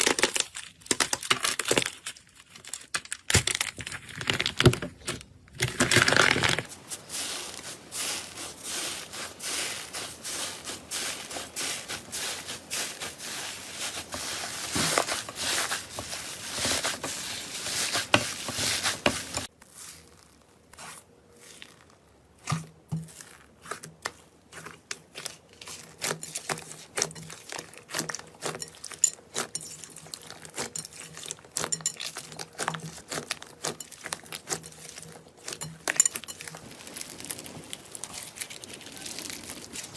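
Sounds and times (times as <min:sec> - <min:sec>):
slime crackling and tearing: 0:00.0 - 0:15.7, 0:36.4 - 0:39.9.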